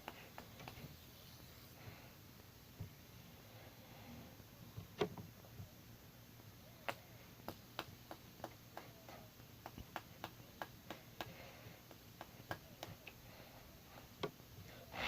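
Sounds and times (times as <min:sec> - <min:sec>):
fidget spinner clicks and taps: 0:00.0 - 0:00.8, 0:06.9 - 0:13.2.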